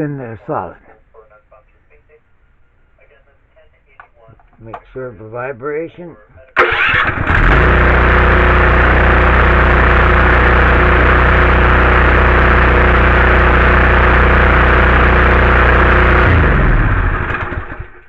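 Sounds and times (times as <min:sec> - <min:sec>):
engine winding down: 0:06.6 - 0:18.0
small gasoline engine running: 0:06.6 - 0:18.0.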